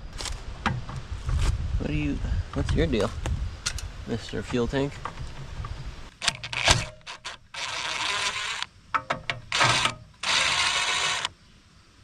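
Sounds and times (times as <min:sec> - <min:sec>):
handling clicks and knocks: 0:03.7 - 0:07.4, 0:08.9 - 0:10.2
power drill bursts: 0:06.2 - 0:08.7, 0:09.5 - 0:11.4.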